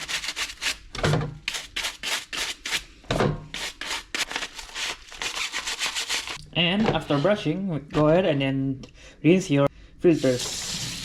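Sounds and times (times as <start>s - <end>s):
brush scrubbing filter: 3.6s - 6.4s.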